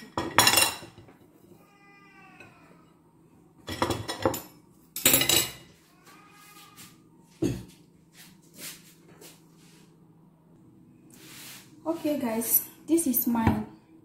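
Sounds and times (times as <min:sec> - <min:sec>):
cutlery clinking on dishes: 0:00.0 - 0:01.5, 0:03.6 - 0:05.8.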